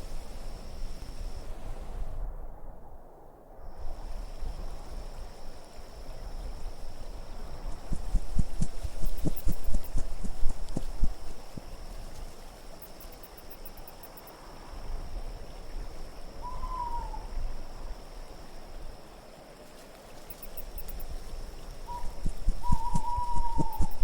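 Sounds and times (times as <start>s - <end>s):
low rumbling gusts: 0.0s - 12.1s, 20.8s - 24.0s
wind-like hiss: 0.0s - 24.0s
falling hoot-like call: 16.4s - 17.4s, 21.9s - 24.0s.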